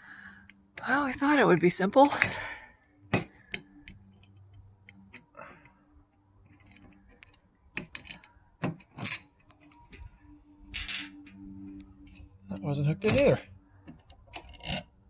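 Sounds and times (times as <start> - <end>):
metal lock parts clicking: 3.1 - 5.8, 6.4 - 9.8, 13.0 - 15.0.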